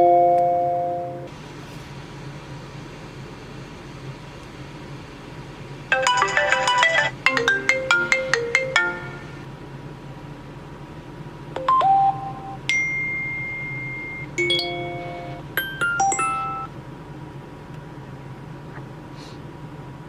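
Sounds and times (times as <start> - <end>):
chiming electronic melody: 0.0 - 1.3, 6.0 - 9.3, 11.6 - 16.7
single ringing tone: 0.0 - 1.3, 11.6 - 16.7
two-note chime: 0.0 - 1.3, 11.7 - 16.7.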